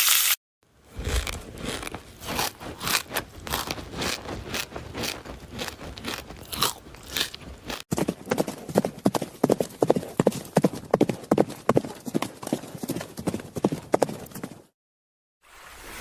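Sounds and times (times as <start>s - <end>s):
horse hooves clip-clopping: 7.2s - 14.7s.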